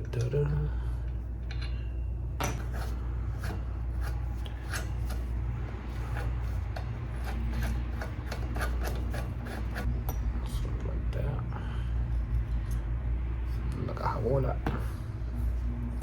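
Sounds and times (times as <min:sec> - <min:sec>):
low hum: 0:00.0 - 0:16.0
metal scraping and clicking: 0:02.5 - 0:10.2.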